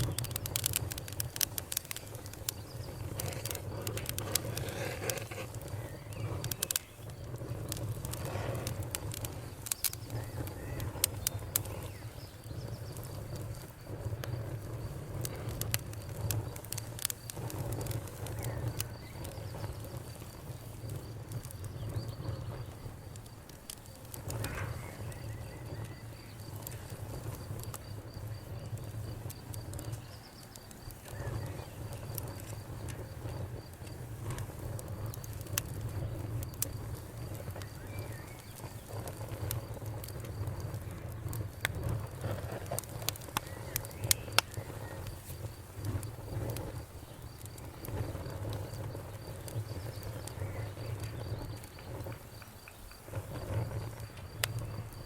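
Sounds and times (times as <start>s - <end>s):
campfire crackling and popping: 0.0s - 55.0s
low rumble of flames: 0.0s - 55.0s.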